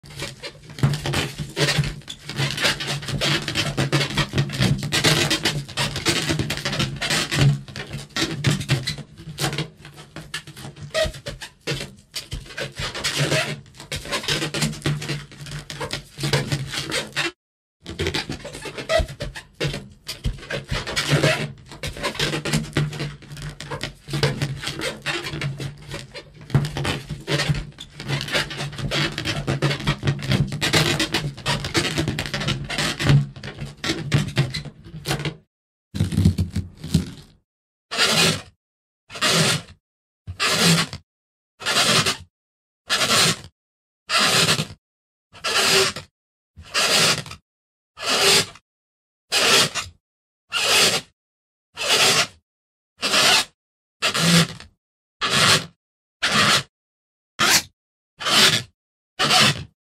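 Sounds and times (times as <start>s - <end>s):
rubber balloon squeaking and rubbing: 0.0s - 41.0s, 41.6s - 42.3s, 42.9s - 44.8s, 45.4s - 47.4s, 48.0s - 48.6s, 49.3s - 51.2s, 51.8s - 52.4s, 53.0s - 56.7s, 57.4s - 59.8s.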